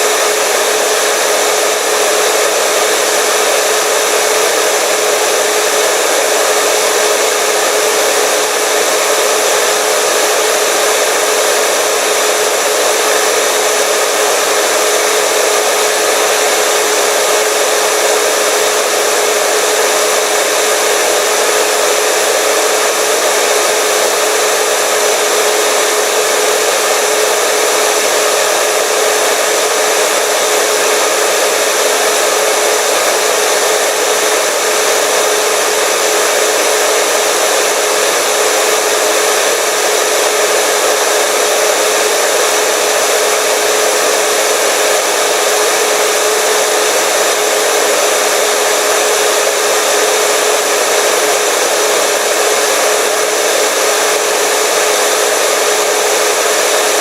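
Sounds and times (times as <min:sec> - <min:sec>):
hair dryer running: 0:00.0 - 0:57.0.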